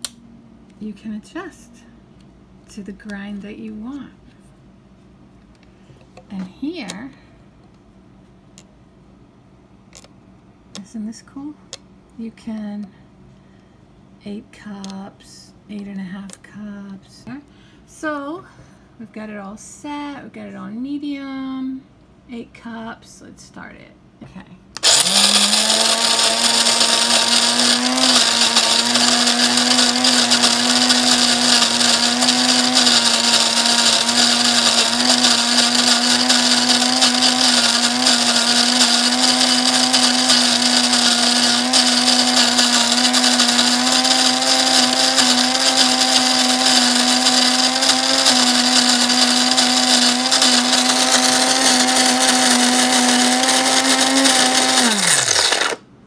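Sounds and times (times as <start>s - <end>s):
electric coffee grinder grinding beans: 24.8s - 55.8s.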